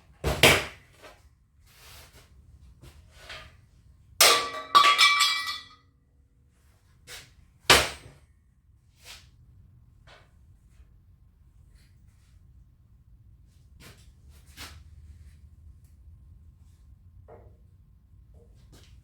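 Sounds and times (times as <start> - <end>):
steel pieces knocking and clanking: 4.2 - 5.8.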